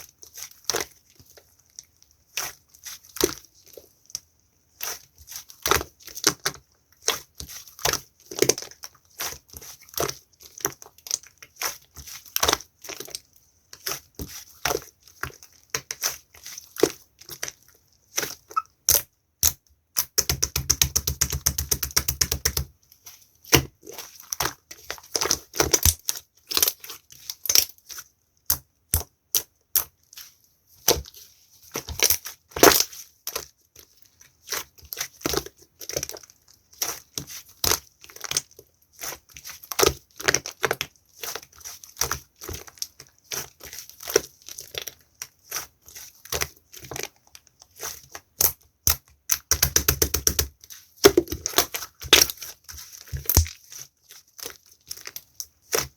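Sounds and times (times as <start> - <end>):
slime popping and crackling: 23.4 - 29.9, 31.7 - 33.5, 34.4 - 55.9.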